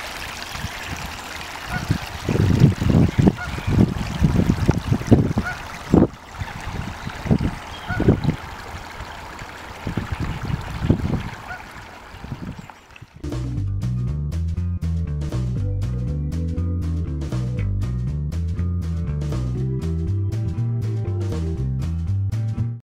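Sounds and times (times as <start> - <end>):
flowing stream: 0.0 - 13.3
wind buffeting microphone: 0.5 - 13.2.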